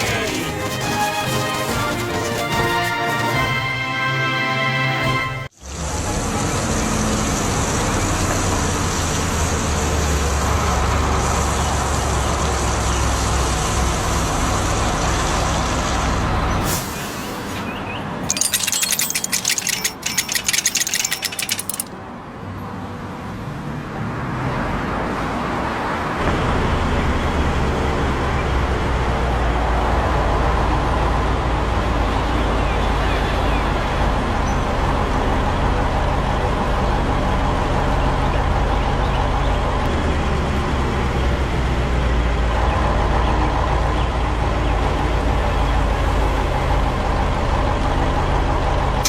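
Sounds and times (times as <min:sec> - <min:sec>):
cartoon vehicle engine: 0:18.3 - 0:21.9
rapid metallic clicking: 0:18.3 - 0:21.9.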